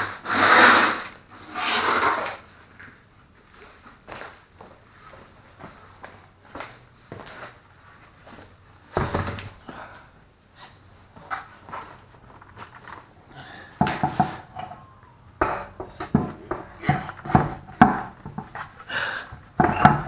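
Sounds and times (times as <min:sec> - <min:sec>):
heavy wheel thump: 0:08.9 - 0:09.6, 0:13.8 - 0:14.8, 0:15.4 - 0:18.8, 0:19.4 - 0:20.0
knocks: 0:13.8 - 0:14.8, 0:15.4 - 0:18.6.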